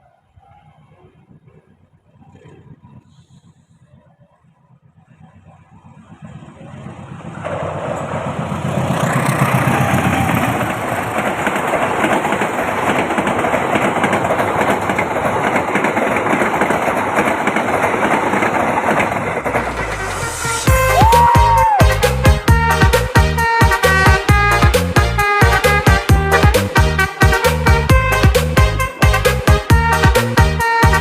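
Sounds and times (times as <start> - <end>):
train passing: 0.0 - 31.0.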